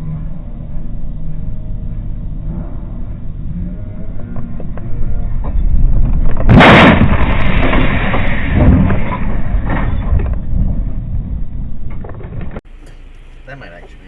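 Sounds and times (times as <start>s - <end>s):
rumbling scraping noise: 0.0s - 12.6s
vehicle collision bang: 6.3s - 10.6s.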